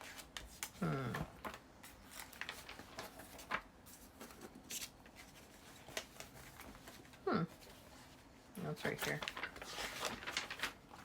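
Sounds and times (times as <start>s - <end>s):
paper rustling and tapping: 0.0s - 7.2s, 8.8s - 11.0s
person humming: 7.2s - 7.6s.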